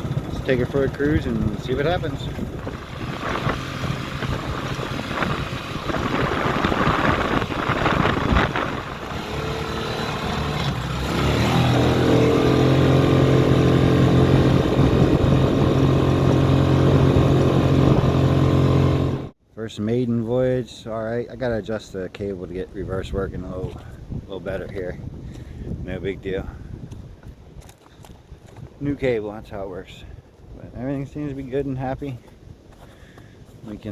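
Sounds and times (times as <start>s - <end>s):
engine knocks: 0.0s - 19.3s
small engine running: 0.0s - 19.3s.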